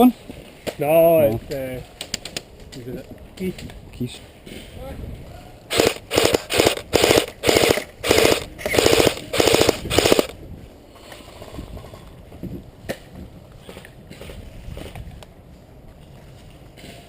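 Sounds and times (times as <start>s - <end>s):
airsoft rifle firing bursts: 5.7s - 10.4s.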